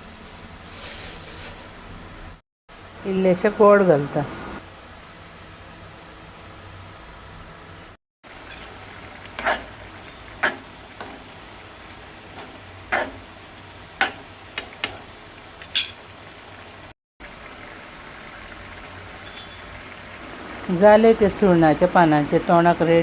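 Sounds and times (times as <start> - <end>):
thick curry being stirred: 8.4 - 15.1.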